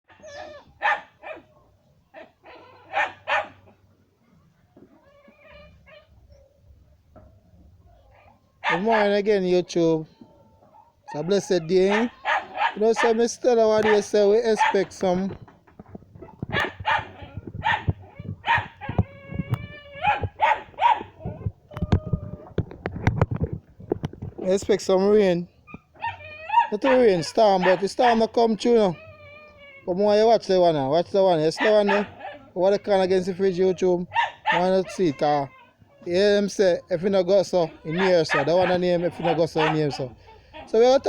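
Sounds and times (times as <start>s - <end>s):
dog barking: 0.1s - 2.3s, 2.9s - 3.7s, 7.9s - 9.2s, 10.8s - 13.2s, 13.8s - 14.9s, 16.5s - 18.9s, 20.0s - 21.1s, 26.0s - 27.9s, 31.6s - 32.5s, 34.1s - 35.0s, 37.8s - 40.8s.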